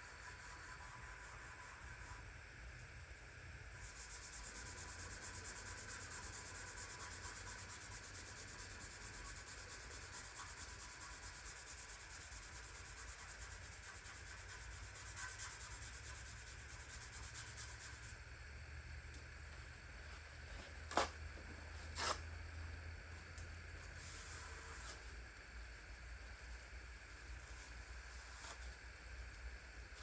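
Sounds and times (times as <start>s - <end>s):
faint abrasive rubbing: 23.8s - 28.8s.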